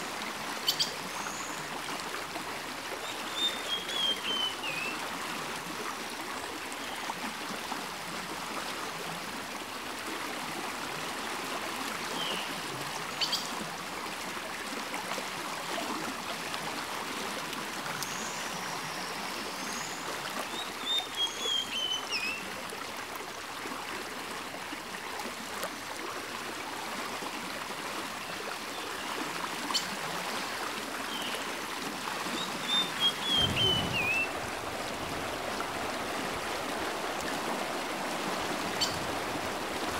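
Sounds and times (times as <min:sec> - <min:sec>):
creek running over rocks: 0:00.0 - 0:39.9
bird chirping: 0:32.4 - 0:34.3.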